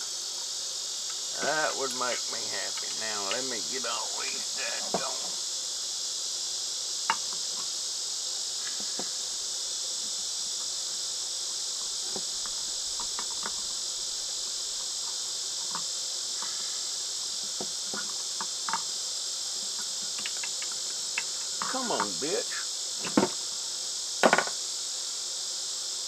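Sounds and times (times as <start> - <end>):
katydids chorus: 0.0 - 25.8
light clicks and taps: 19.8 - 21.7.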